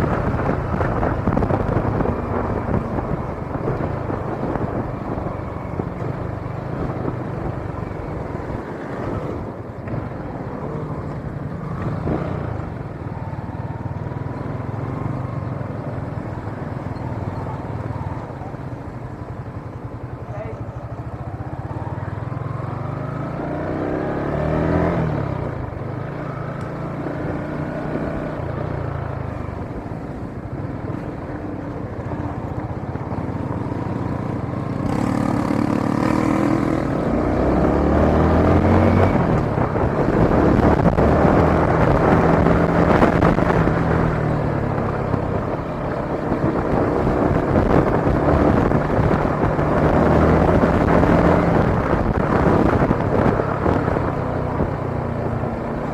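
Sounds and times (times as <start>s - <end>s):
wind noise on microphone: 0.0s - 10.4s, 28.3s - 55.9s.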